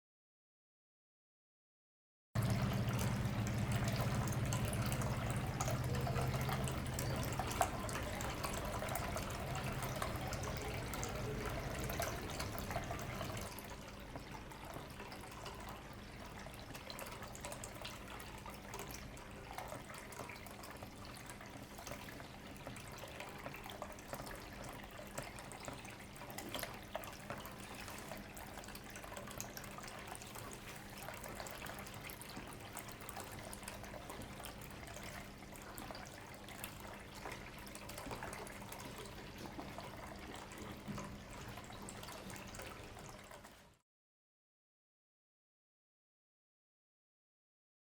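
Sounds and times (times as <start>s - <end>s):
faint low hum: 2.4s - 13.6s
water trickling into fountain basin: 2.4s - 43.7s.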